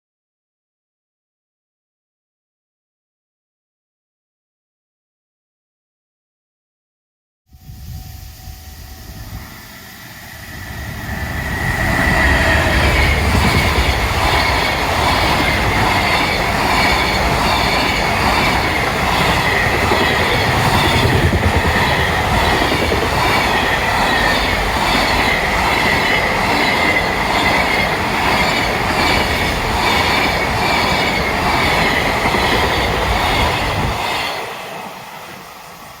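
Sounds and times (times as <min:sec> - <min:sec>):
high-pitched squeal: 0:07.5 - 0:36.0
train wheels rumbling on rails: 0:08.0 - 0:36.0.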